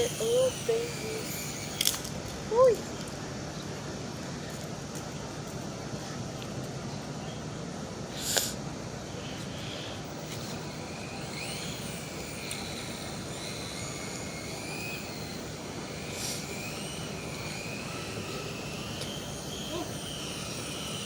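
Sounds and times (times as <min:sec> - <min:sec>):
toy helicopter motor whining: 0:00.0 - 0:02.8, 0:08.1 - 0:21.0
steady background hiss: 0:00.0 - 0:21.0.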